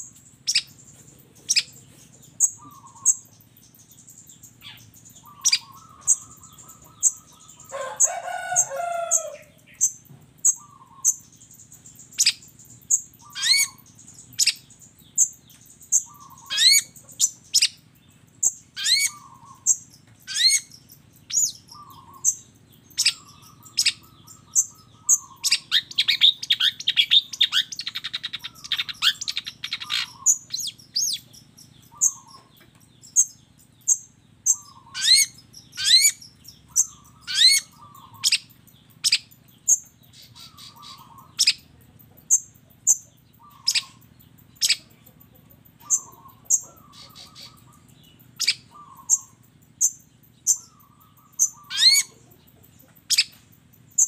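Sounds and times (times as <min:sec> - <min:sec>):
bird singing sharp rising calls: 0:00.0 - 0:45.1, 0:45.7 - 0:54.0.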